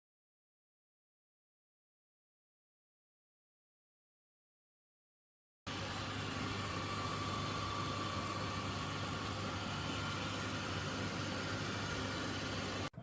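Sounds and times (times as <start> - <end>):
robot vacuum motor whir: 5.7 - 12.9.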